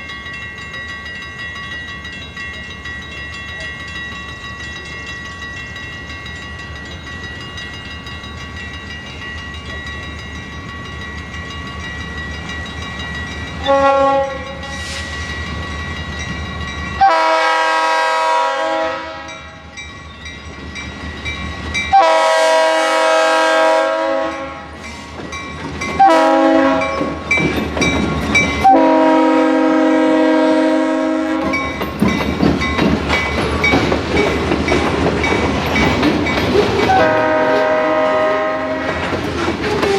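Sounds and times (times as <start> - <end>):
train rumbling: 0.0 - 39.9
locomotive air horn blasts: 13.6 - 15.1, 17.0 - 19.5, 21.9 - 24.8, 26.0 - 27.1, 28.6 - 31.6, 36.9 - 39.0
wheels clacking over rail joints: 24.9 - 28.8, 31.3 - 39.9.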